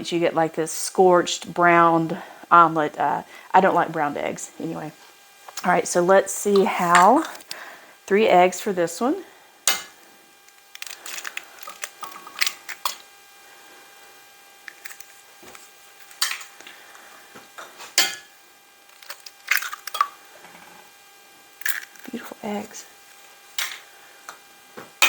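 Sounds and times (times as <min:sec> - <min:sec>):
eggs cracking: 0:09.7 - 0:13.1, 0:14.6 - 0:18.2, 0:18.8 - 0:20.3, 0:21.6 - 0:24.4.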